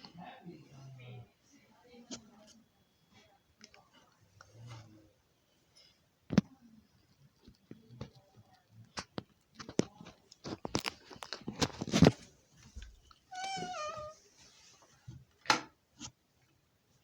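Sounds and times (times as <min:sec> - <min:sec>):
sharp crunches and clicks: 0:06.4 - 0:12.2.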